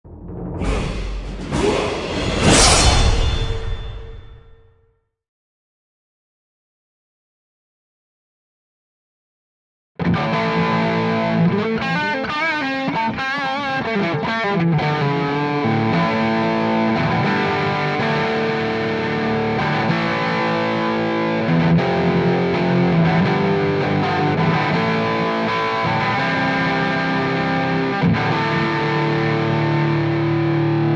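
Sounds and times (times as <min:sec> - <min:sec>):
electric guitar with delay: 0:10.0 - 0:30.9.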